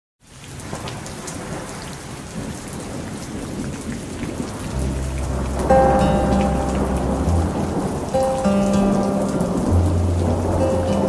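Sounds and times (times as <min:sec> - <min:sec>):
steady rain falling: 0:00.2 - 0:11.0
low steady music note: 0:04.7 - 0:11.0.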